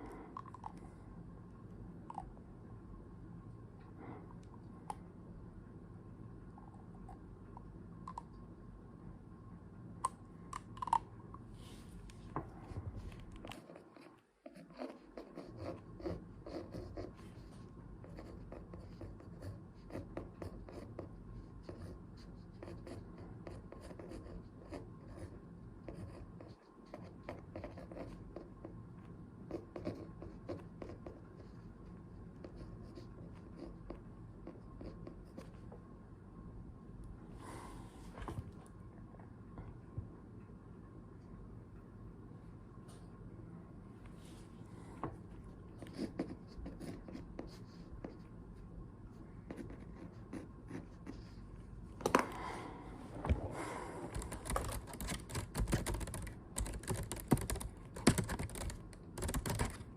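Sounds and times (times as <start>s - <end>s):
faint steady hum: 0.0s - 59.9s
pen scratching on paper: 13.4s - 28.6s, 29.5s - 35.6s, 45.8s - 48.3s, 49.5s - 51.4s.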